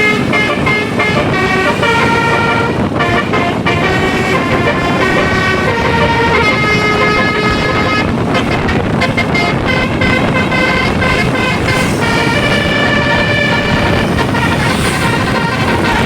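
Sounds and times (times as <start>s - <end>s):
musical air horn playing a tune: 0.0s - 16.0s
road and engine noise: 0.0s - 16.0s.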